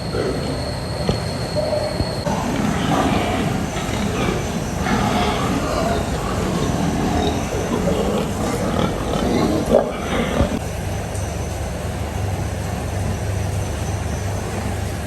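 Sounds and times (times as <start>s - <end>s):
pigs grunting: 0.0s - 10.6s
steady low hum: 0.0s - 15.0s.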